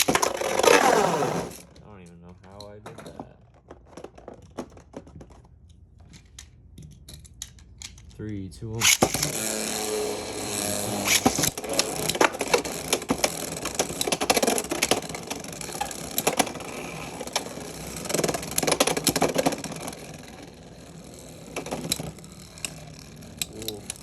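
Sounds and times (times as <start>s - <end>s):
spinning top launcher rip: 0.0s - 1.6s, 8.8s - 24.0s
spinning tops scraping whir: 0.0s - 1.8s, 8.8s - 24.0s
plastic clacks from hits: 0.0s - 8.2s, 11.0s - 24.0s.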